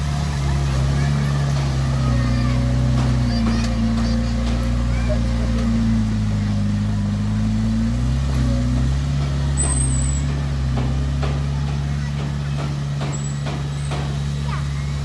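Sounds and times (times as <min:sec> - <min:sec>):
heavy diesel engine running: 0:00.0 - 0:15.0
sharp clicks and knocks: 0:01.2 - 0:04.9, 0:08.3 - 0:14.5.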